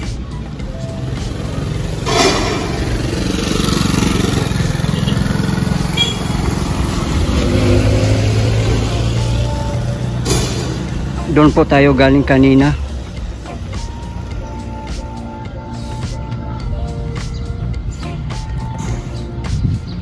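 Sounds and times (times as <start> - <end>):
vehicles passing by: 0.0 - 20.0.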